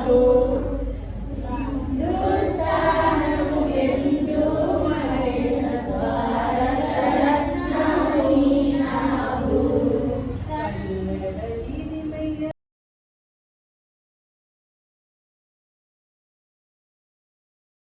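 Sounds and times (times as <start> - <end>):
group singing in unison: 0.0 - 10.5.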